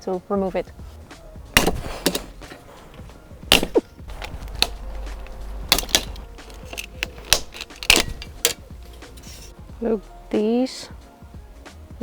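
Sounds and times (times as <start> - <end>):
plastic trim clips popping: 1.6 - 2.6, 3.4 - 9.5.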